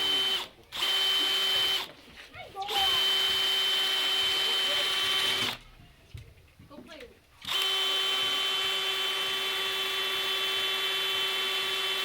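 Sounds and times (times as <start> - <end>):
power tool whining: 0.0 - 2.0, 2.6 - 5.6, 7.4 - 12.0.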